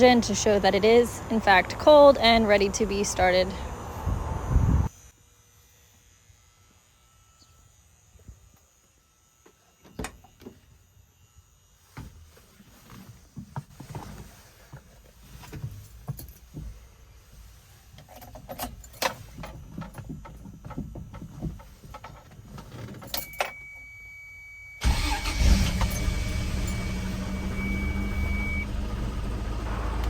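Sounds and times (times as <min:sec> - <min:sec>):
engine starting and idling: 0:24.8 - 0:30.0.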